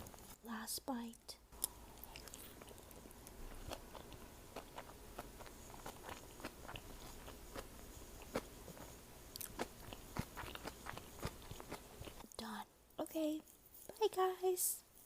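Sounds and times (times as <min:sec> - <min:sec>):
person chewing food: 0:01.5 - 0:12.3.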